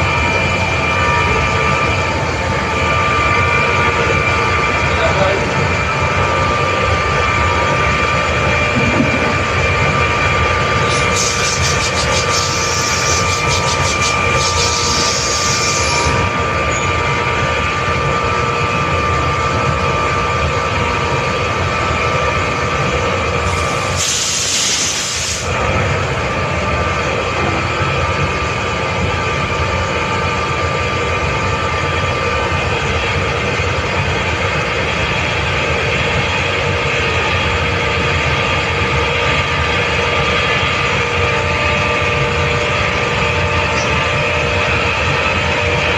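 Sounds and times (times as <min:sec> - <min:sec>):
air compressor running: 0:00.0 - 0:45.9
air hissing with rapid ticking: 0:10.8 - 0:16.2, 0:23.5 - 0:25.5
short loud air hiss: 0:10.9 - 0:16.1, 0:23.5 - 0:25.5.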